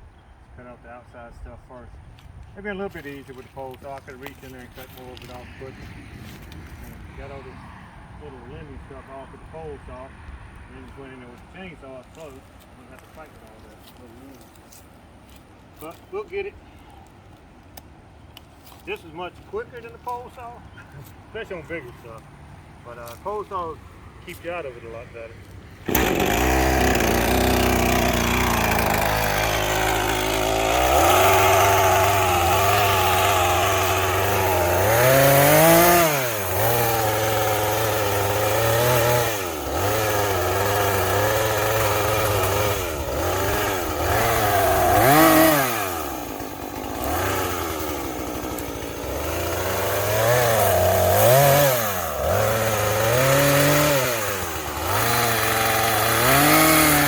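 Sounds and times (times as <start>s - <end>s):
small chainsaw revving: 25.8s - 57.0s.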